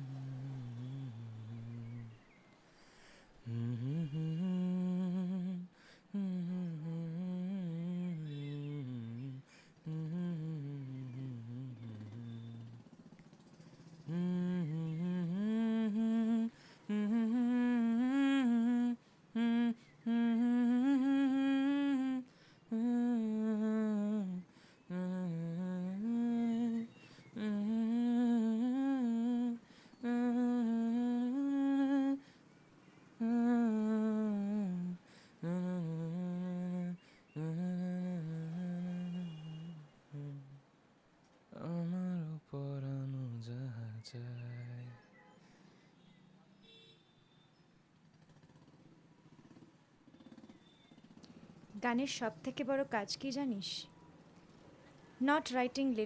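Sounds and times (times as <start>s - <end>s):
person humming a melody: 0.0s - 2.2s, 3.4s - 12.9s, 13.8s - 32.3s, 33.2s - 40.6s, 41.6s - 44.9s.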